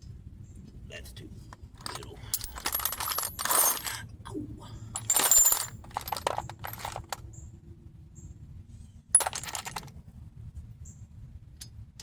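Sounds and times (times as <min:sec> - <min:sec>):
metal hand tools clinking: 0:01.8 - 0:04.0, 0:05.0 - 0:07.2, 0:09.2 - 0:09.9.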